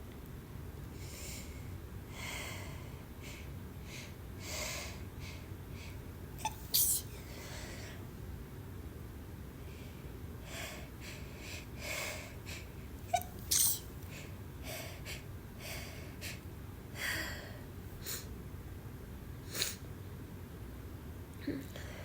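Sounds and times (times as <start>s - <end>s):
person sneezing: 6.4s - 7.2s, 13.2s - 13.9s.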